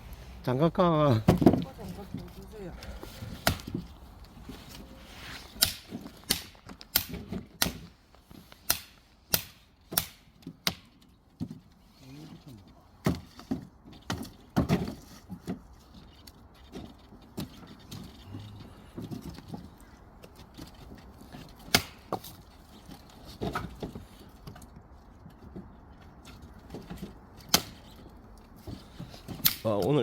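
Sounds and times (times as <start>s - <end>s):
firewood knocking against wood: 3.3s - 4.0s.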